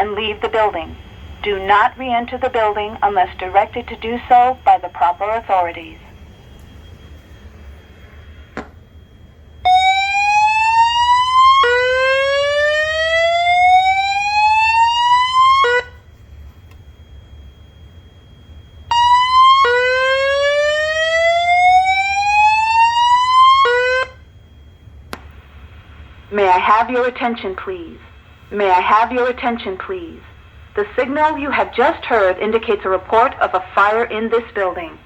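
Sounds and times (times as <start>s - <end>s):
fire alarm whoop tone: 4.2s - 24.4s.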